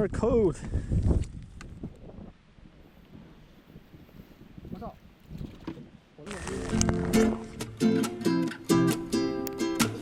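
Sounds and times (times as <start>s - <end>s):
acoustic guitar strumming: 6.3s - 10.0s.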